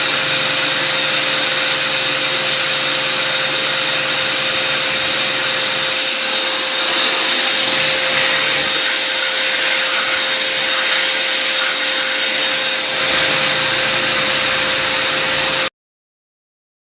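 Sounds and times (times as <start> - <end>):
small electric motor whirring: 0.0 - 15.7.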